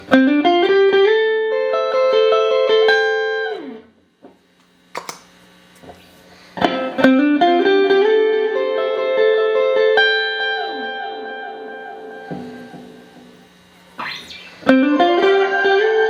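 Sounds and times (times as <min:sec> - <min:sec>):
clean electric guitar picking: 0:00.0 - 0:05.8, 0:06.6 - 0:16.0
amp hum: 0:00.0 - 0:16.0
sharp click: 0:04.6 - 0:05.3.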